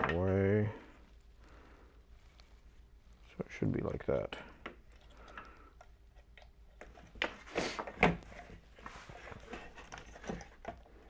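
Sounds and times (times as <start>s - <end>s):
short scrape: 7.5s - 7.8s.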